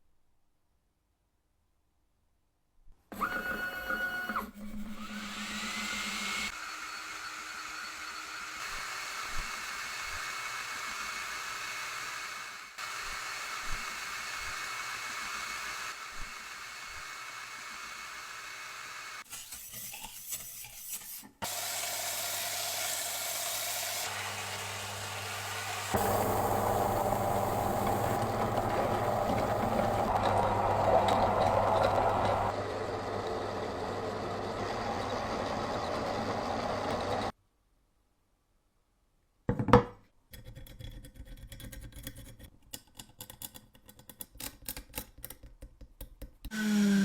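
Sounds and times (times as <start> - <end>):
power tool motor whirring: 3.1 - 19.2, 21.5 - 37.3, 46.5 - 47.0
power tool with low hum: 3.1 - 19.2, 21.5 - 37.3, 46.5 - 47.0.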